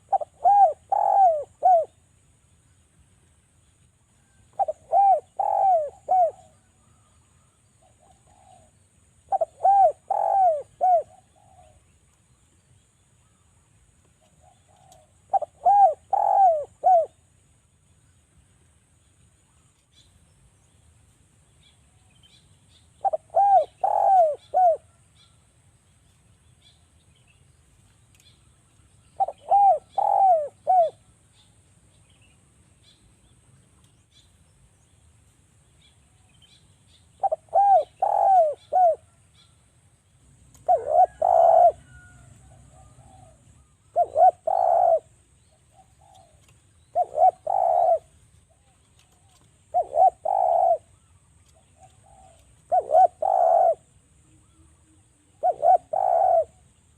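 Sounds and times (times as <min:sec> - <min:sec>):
dove cooing: 0:00.0 - 0:02.0, 0:04.2 - 0:07.0, 0:07.8 - 0:11.9, 0:14.2 - 0:17.3, 0:23.0 - 0:25.0, 0:29.2 - 0:31.2, 0:37.2 - 0:39.2, 0:40.5 - 0:56.7.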